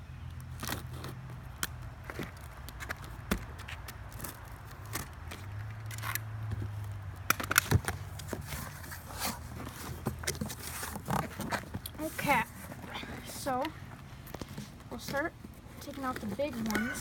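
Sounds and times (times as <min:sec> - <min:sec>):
cardboard box scraping and rustling: 0:08.0 - 0:13.7, 0:14.4 - 0:17.0.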